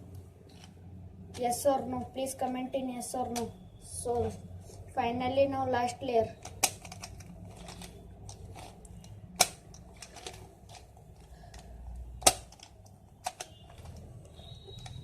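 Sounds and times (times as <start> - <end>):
plastic puzzle cube clicking: 6.4 - 15.0.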